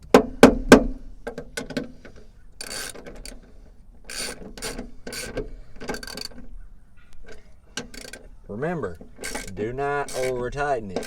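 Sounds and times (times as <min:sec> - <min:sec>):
ratchet wrench strokes: 0:01.6 - 0:06.4, 0:07.2 - 0:11.0.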